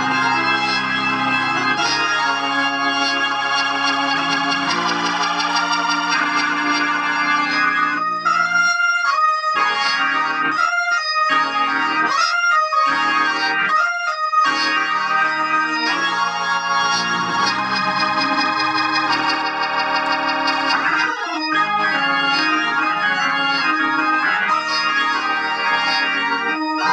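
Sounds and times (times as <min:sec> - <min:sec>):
organ playing chords: 0:00.0 - 0:26.9.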